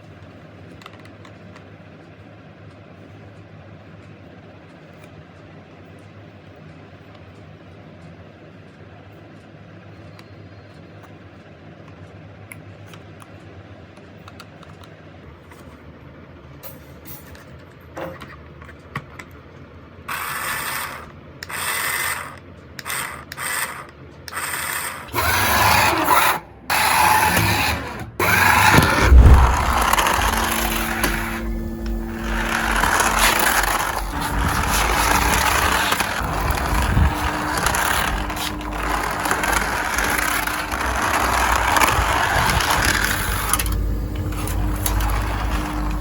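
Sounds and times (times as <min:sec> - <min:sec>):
toy car motor whirring: 0:20.1 - 0:46.0.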